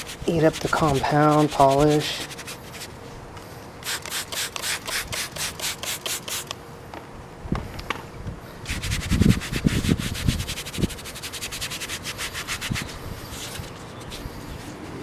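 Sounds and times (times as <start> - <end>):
hand scrubbing foam pad: 0.0 - 2.9, 8.7 - 14.7.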